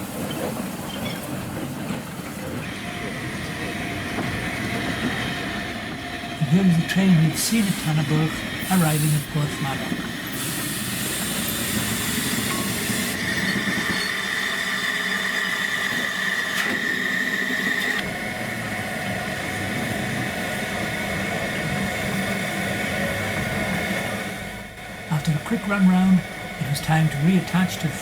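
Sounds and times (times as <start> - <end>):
train rolling rumble: 0.0 - 28.0
high steam hiss: 2.8 - 16.1
high squeal: 10.5 - 18.0.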